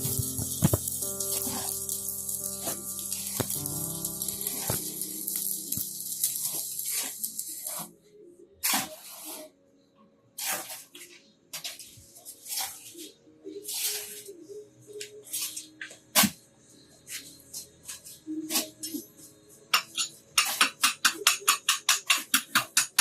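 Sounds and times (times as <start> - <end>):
electric arc welding crackle: 0.0 - 7.9.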